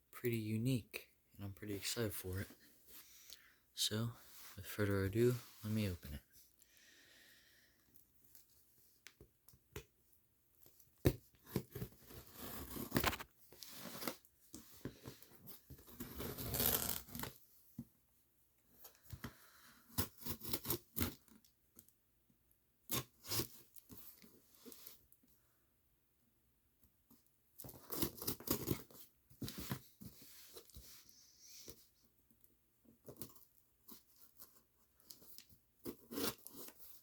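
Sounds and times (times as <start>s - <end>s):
packaging tearing and scraping: 11.6s - 14.2s, 15.9s - 17.3s, 35.8s - 37.0s.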